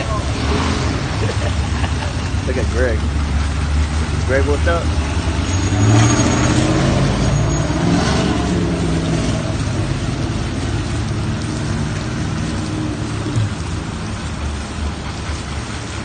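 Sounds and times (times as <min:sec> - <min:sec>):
vehicle engine revving past: 0:00.0 - 0:01.4, 0:03.2 - 0:13.7
rain hiss: 0:00.0 - 0:16.0.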